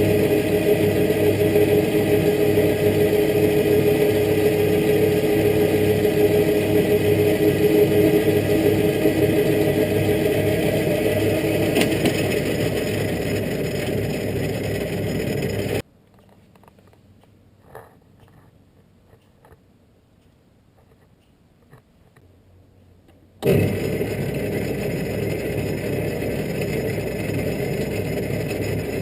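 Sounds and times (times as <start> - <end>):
metal lathe humming: 0.0 - 15.8, 23.4 - 29.0.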